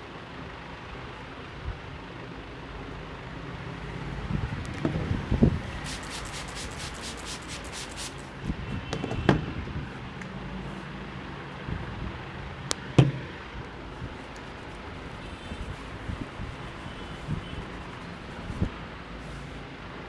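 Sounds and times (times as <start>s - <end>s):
hands rubbing and patting hair: 5.8s - 8.3s, 13.8s - 19.6s.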